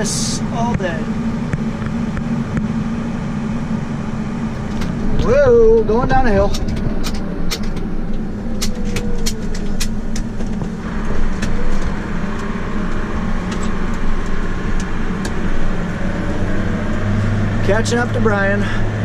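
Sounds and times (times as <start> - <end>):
tractor engine under load: 0.0 - 19.0
sharp clicks and rattles: 4.5 - 18.3.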